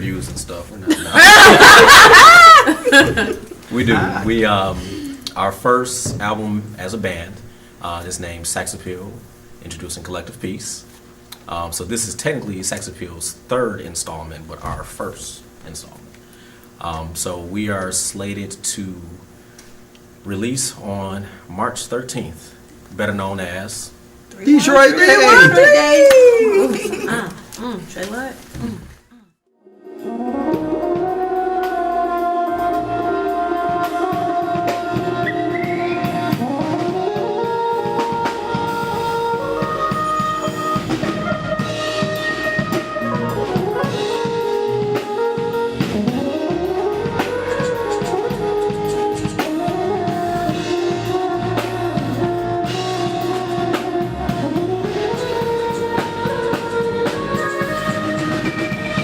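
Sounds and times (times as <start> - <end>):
drum kit beat: 0.9 - 5.3, 24.5 - 27.9, 33.6 - 59.0
saxophone melody: 29.8 - 59.0.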